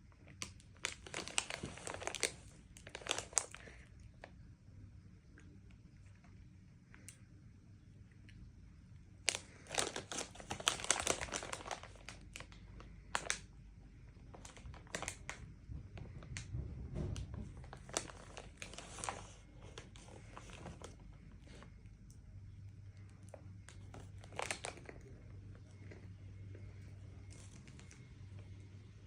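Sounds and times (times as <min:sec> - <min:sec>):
plastic packaging crinkling: 0:00.4 - 0:03.9, 0:09.3 - 0:13.5, 0:14.2 - 0:15.5, 0:17.2 - 0:21.7, 0:23.0 - 0:26.0, 0:26.9 - 0:28.1.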